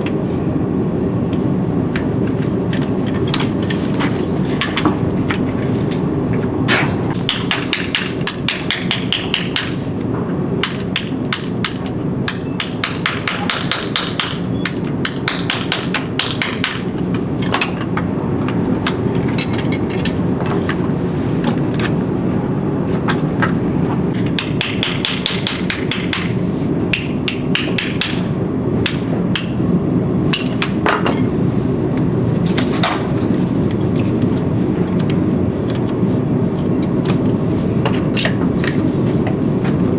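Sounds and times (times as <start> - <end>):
hammer striking steel: 7.2 - 9.8, 10.6 - 16.9, 24.4 - 29.6.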